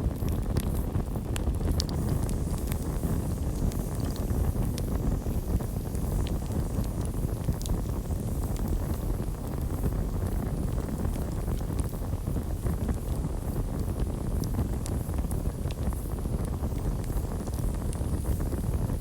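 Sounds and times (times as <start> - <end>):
fire crackles and pops: 0.0 - 19.0
rumble of campfire flames: 0.0 - 19.0.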